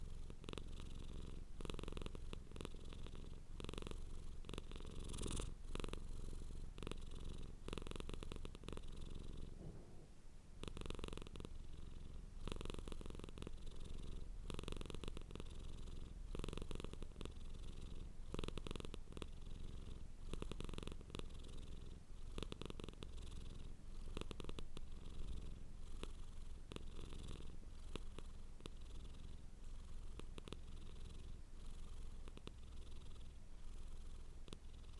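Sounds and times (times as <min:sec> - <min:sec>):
cat purring: 0:00.0 - 0:34.9.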